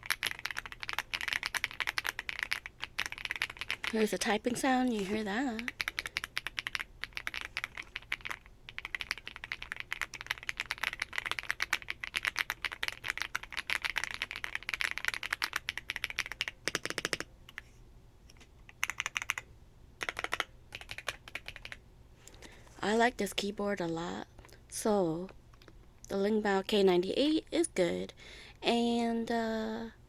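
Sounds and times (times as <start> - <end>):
mechanical keyboard typing: 0.0 - 17.6, 18.7 - 19.4, 20.0 - 21.8.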